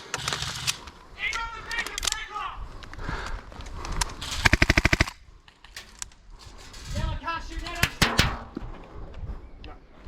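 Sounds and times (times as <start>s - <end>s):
airsoft rifle rapid shots: 4.4s - 5.1s.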